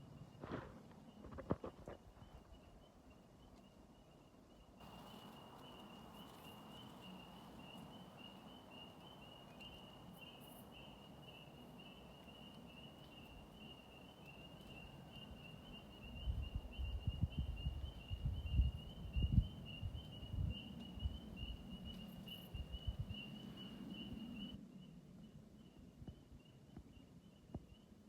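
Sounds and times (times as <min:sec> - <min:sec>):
low rumbling microphone buffets: 0:16.1 - 0:24.6.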